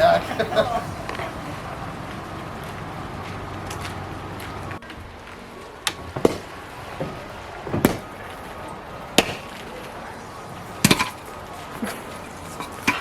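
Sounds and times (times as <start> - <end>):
wood being chopped: 5.9 - 8.2, 9.2 - 9.7, 10.8 - 11.2.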